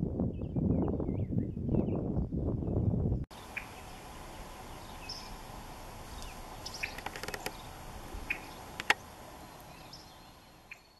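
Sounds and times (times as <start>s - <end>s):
birds chirping: 0.3s - 10.9s
outdoor hiss: 3.3s - 10.9s
sharp clicks: 6.8s - 7.6s, 8.8s - 9.0s.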